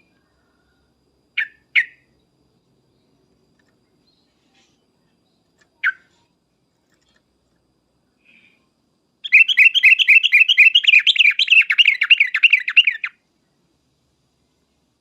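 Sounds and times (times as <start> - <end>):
bird chattering call: 9.2 - 13.2.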